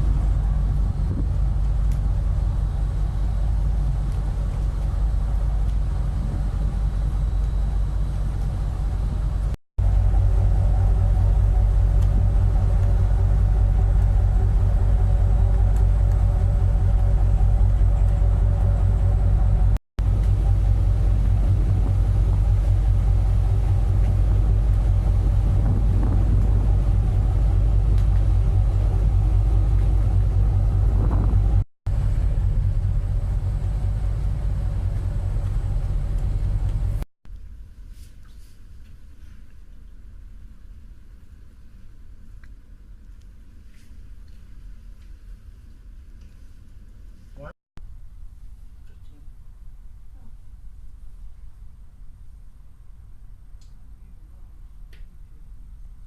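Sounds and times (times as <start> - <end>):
ship engines rumbling: 0.0 - 37.0.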